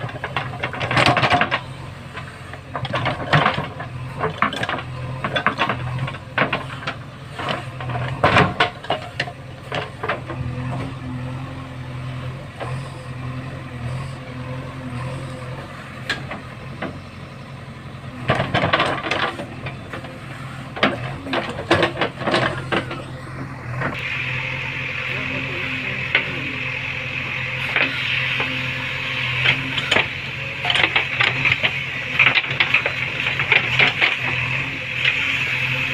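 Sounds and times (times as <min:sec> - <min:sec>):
digger metallic knocks and clanks: 0:00.0 - 0:24.2, 0:24.8 - 0:35.9
diesel engine running: 0:00.0 - 0:35.9.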